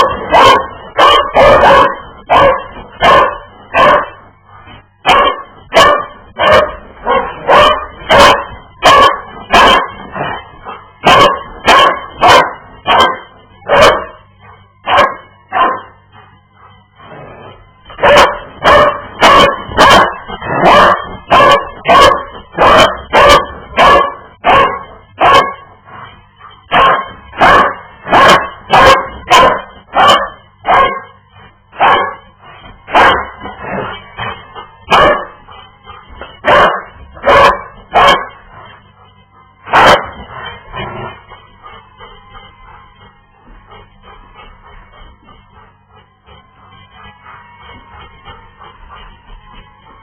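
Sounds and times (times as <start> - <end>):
dog barking: 0.0 - 4.2, 5.0 - 10.1, 11.0 - 16.0, 18.0 - 25.7, 26.7 - 31.2, 31.8 - 32.2, 32.9 - 33.4, 34.9 - 35.4, 36.4 - 38.5, 39.7 - 40.3.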